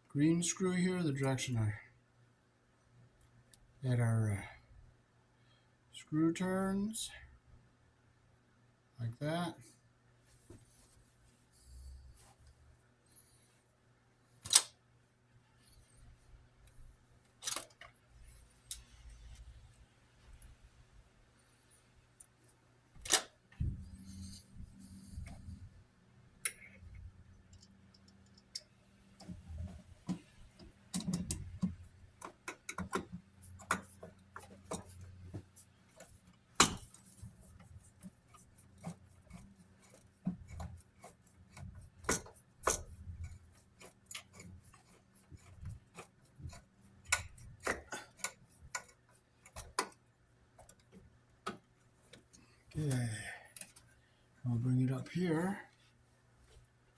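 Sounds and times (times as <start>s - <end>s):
screwdriver clicks and taps: 30.1s - 35.4s, 38.3s - 50.0s, 50.6s - 52.2s.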